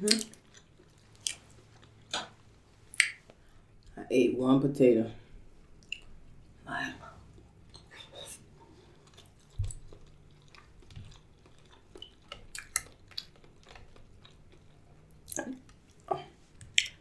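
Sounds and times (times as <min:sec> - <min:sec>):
wet mouth clicks and smacks: 0:00.0 - 0:03.9, 0:05.8 - 0:06.2, 0:09.1 - 0:17.0
soft chewing: 0:00.0 - 0:04.0, 0:05.3 - 0:17.0.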